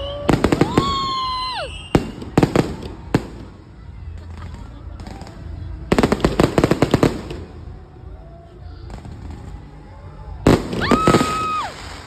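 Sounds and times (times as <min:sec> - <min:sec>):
high steady whistling tone: 0:01.2 - 0:02.4.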